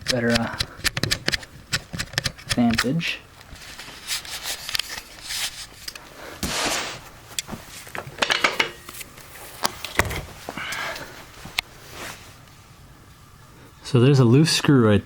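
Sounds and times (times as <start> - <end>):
rubbing rustle: 3.5 - 7.9, 8.9 - 12.7.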